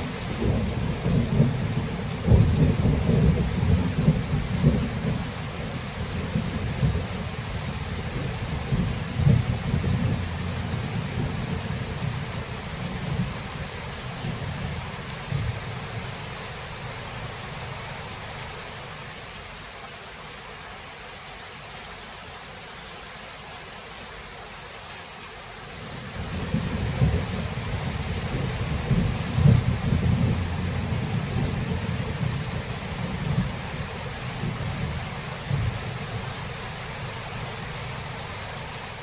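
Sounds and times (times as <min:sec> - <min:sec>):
steady rain: 0:00.0 - 0:39.0
rolling thunder: 0:00.2 - 0:05.3, 0:08.2 - 0:13.6, 0:26.2 - 0:33.8.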